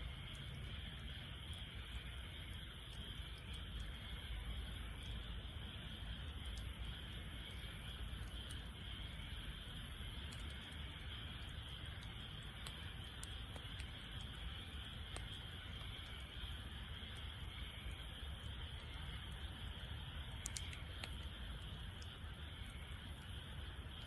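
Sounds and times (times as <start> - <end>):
wood fire crackling and popping: 6.4 - 24.0.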